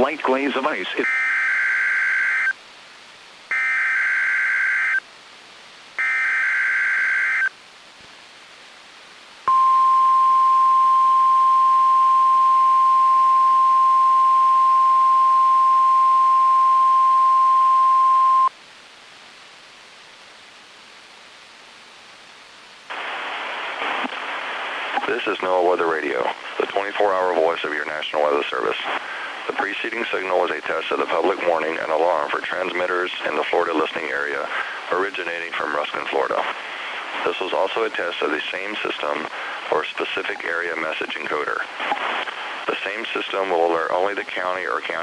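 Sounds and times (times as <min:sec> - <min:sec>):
static hiss: 0:00.0 - 0:45.0
steady warning alarm tone: 0:01.0 - 0:02.5, 0:03.5 - 0:05.0, 0:06.0 - 0:07.5.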